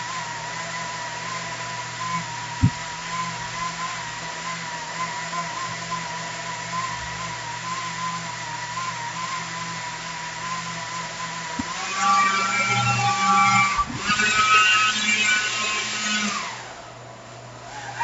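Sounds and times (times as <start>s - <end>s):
electric propeller motors whining: 0.0s - 18.0s.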